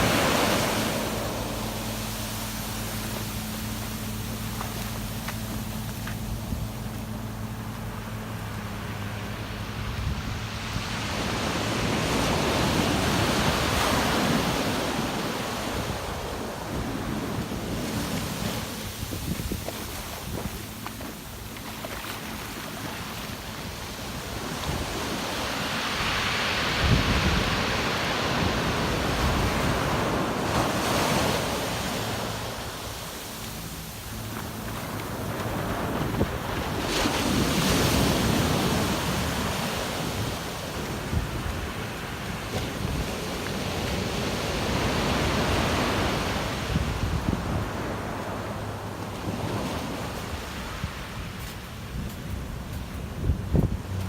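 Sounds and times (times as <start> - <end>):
wave breaking on beach: 0.0 - 54.0
wind buffeting microphone: 9.0 - 31.6, 34.1 - 54.0.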